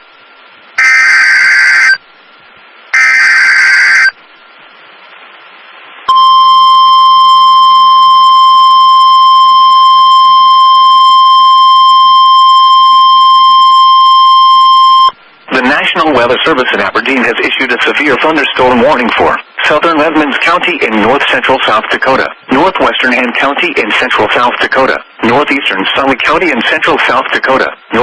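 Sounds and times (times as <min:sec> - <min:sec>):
screeching digital header bursts: 0:00.8 - 0:02.0, 0:03.0 - 0:04.2
steady warning tone: 0:00.8 - 0:02.0, 0:03.0 - 0:04.2.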